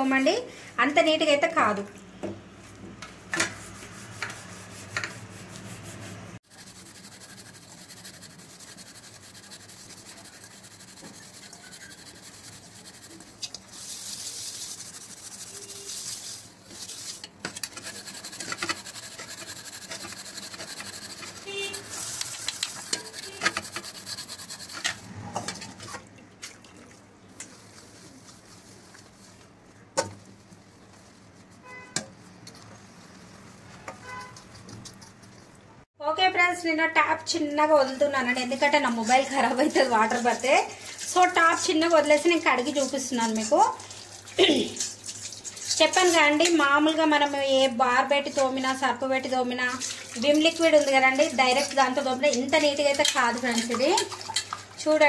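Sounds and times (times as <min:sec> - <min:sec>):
scrubber scouring a cooking pot: 0:03.1 - 0:25.1, 0:37.3 - 0:55.0.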